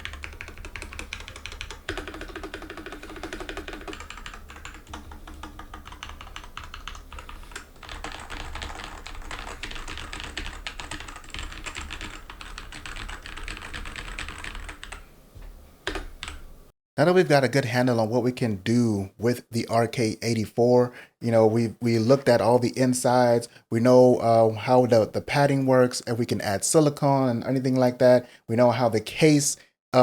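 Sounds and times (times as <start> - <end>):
mechanical keyboard typing: 0.0 - 15.0, 15.8 - 16.5.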